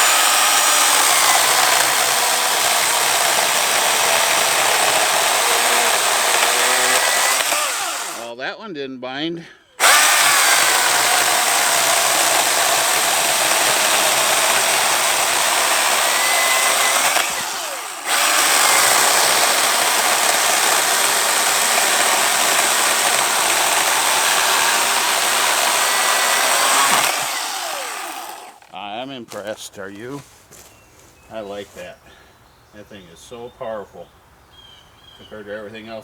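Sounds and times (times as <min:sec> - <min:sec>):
chainsaw cutting log: 0:00.0 - 0:08.3, 0:09.8 - 0:28.8.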